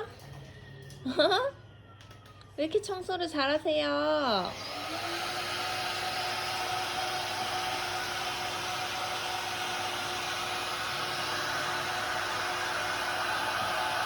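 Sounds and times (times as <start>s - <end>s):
vacuum cleaner motor running: 4.4s - 14.0s.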